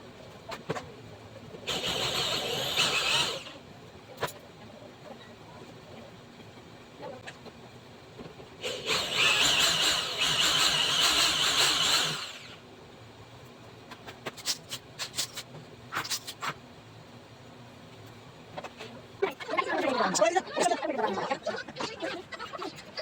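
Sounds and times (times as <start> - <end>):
power drill running: 1.7 - 3.6, 8.6 - 12.6.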